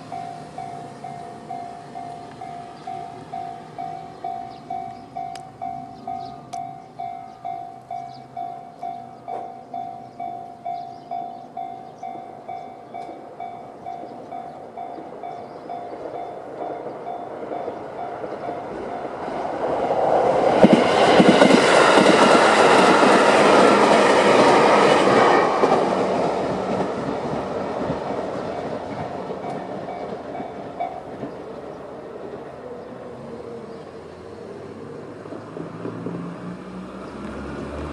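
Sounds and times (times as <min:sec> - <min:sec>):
level crossing alarm bell: 0:00.0 - 0:19.4, 0:29.4 - 0:31.2
electric train passing: 0:00.0 - 0:37.9.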